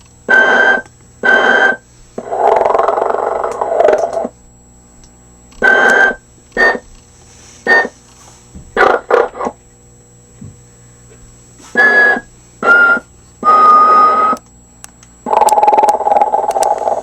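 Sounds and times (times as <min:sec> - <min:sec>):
recorded snoring through small speaker: 0:00.3 - 0:04.3, 0:08.8 - 0:09.6, 0:11.7 - 0:14.4, 0:15.2 - 0:17.0.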